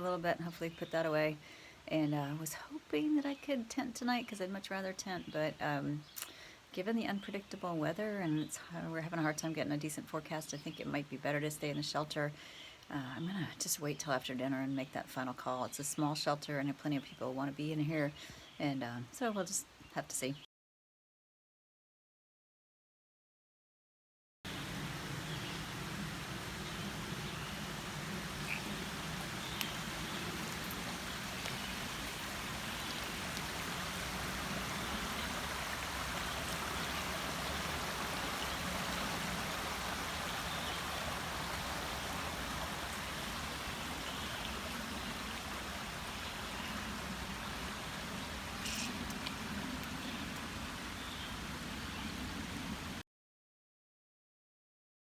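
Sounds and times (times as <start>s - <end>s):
creek water running: 24.5s - 53.0s
faint ticks: 28.4s - 32.2s.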